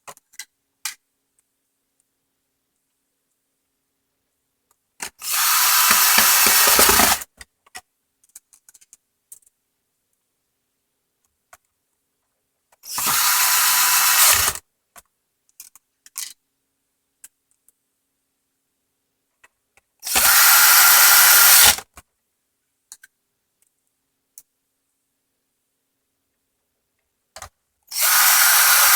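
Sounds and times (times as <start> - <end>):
power screwdriver driving screws: 5.2 - 7.2, 12.9 - 14.6, 20.1 - 21.8, 27.9 - 28.9
clicks from handling parts: 5.3 - 7.2.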